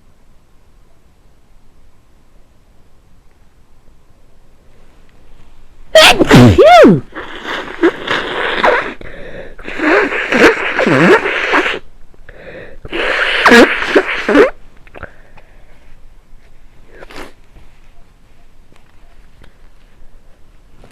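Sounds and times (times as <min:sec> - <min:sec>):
person blowing nose: 0:06.0 - 0:15.1, 0:16.9 - 0:17.4.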